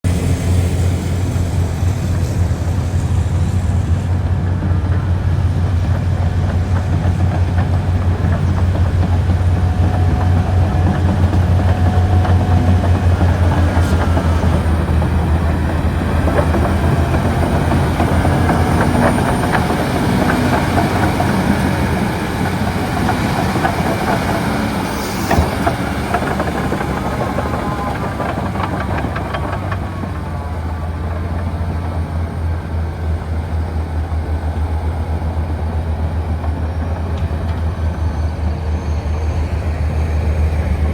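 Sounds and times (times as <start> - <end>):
bulldozer diesel engine drone: 0.0 - 40.9
steel tracks clattering: 0.1 - 40.9.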